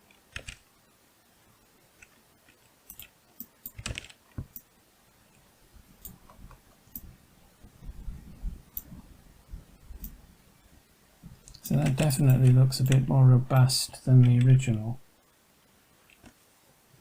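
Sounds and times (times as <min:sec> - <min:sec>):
mouse and keyboard clicks: 0:00.1 - 0:00.6, 0:16.1 - 0:16.4.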